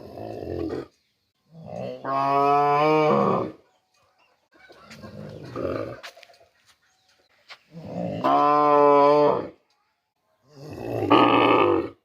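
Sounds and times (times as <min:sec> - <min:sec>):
cow mooing: 0:01.6 - 0:03.6, 0:07.8 - 0:09.5.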